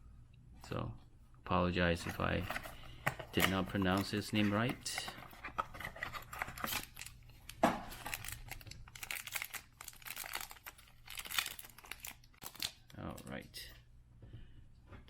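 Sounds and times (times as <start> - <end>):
wrapper crinkling and tearing: 5.5 - 13.4.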